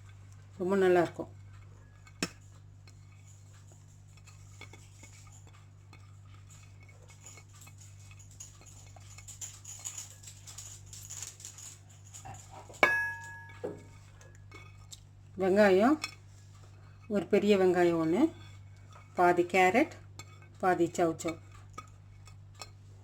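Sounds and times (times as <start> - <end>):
spoon knocking bowl: 12.8 - 14.0.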